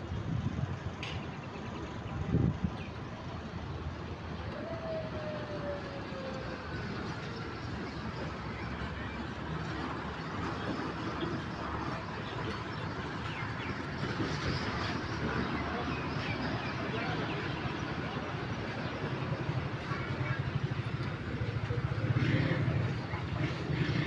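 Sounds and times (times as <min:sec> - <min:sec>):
diesel engine running: 0:06.6 - 0:24.0.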